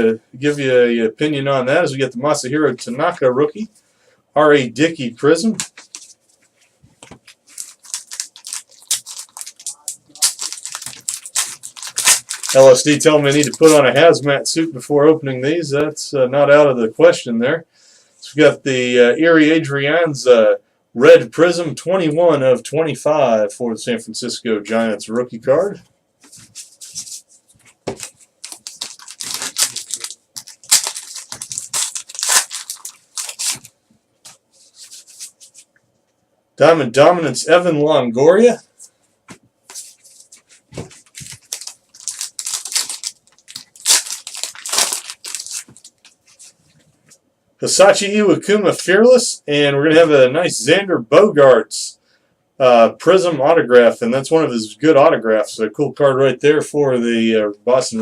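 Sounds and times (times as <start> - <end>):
cards rustling: 5.5 - 14.0, 26.2 - 35.7, 39.7 - 46.9
wrappers crinkling and tearing: 7.2 - 14.0, 27.9 - 33.7, 39.8 - 46.6.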